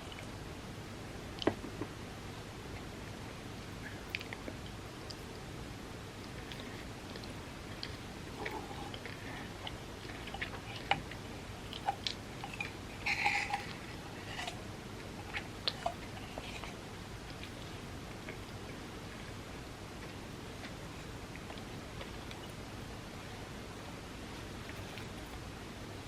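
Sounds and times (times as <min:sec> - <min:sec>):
person chewing: 0:06.2 - 0:18.8.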